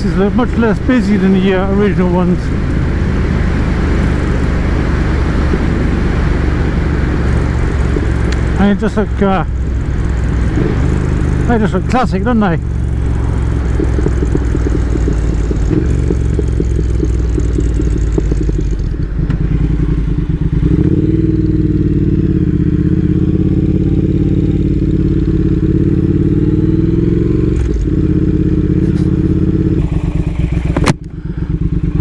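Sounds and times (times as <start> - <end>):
motorcycle engine running: 0.0 - 32.0.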